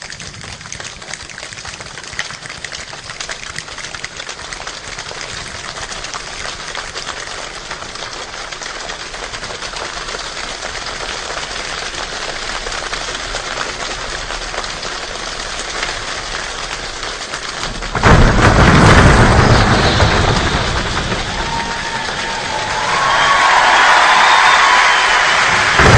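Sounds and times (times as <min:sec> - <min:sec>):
imitated rain patter: 0:00.0 - 0:25.9
loud burst: 0:17.6 - 0:25.9.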